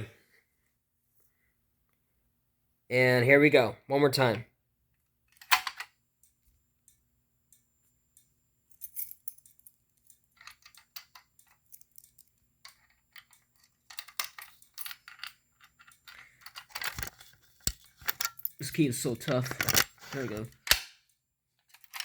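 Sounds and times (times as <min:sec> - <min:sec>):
key rattling in lock: 0:08.8 - 0:19.8.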